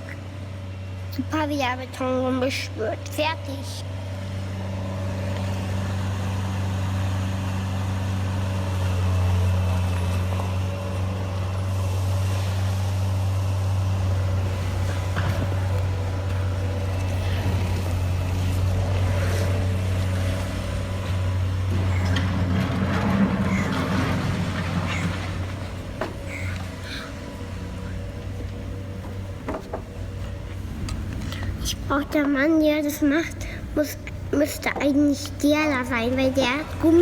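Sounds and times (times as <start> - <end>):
toy truck motor hum: 4.5 - 31.9.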